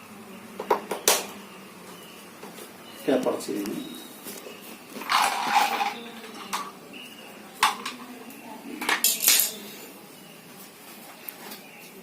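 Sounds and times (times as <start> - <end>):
tools rattling and clattering: 5.0 - 6.7, 8.8 - 9.6.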